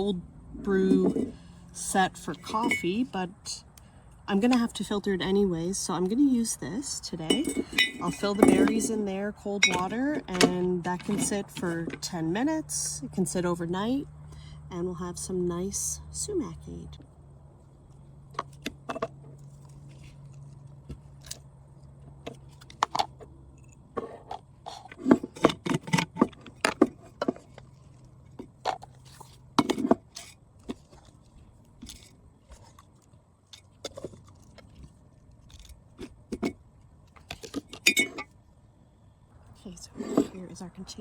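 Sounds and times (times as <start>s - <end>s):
low steady hum: 0.0s - 41.0s
kitchen containers clinking and knocking: 0.8s - 3.1s, 7.3s - 12.1s.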